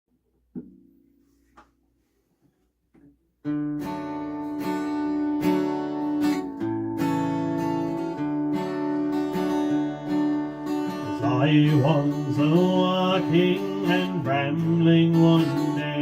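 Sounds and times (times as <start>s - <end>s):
strummed acoustic guitar chords: 3.4s - 16.0s.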